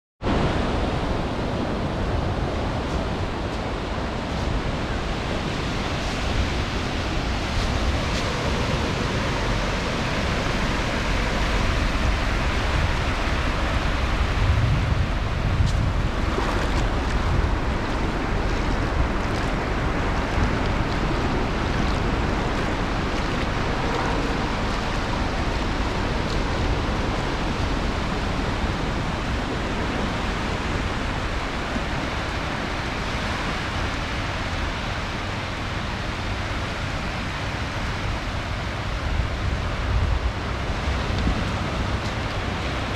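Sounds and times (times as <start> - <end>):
ocean surf on sandy beach: 0.2 - 42.9.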